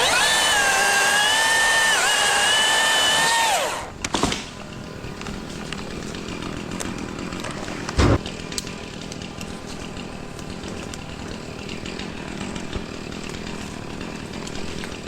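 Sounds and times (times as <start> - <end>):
electric chainsaw whining: 0.0 - 4.2.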